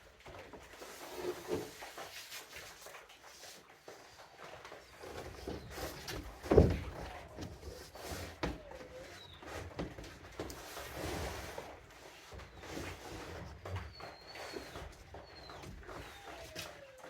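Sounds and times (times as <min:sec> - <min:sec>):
plywood sheets knocking and thumping: 0:05.0 - 0:10.7.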